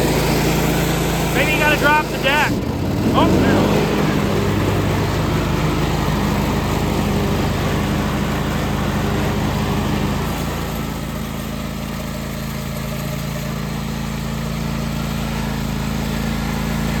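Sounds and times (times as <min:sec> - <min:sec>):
lawn tractor engine running: 0:00.0 - 0:17.0.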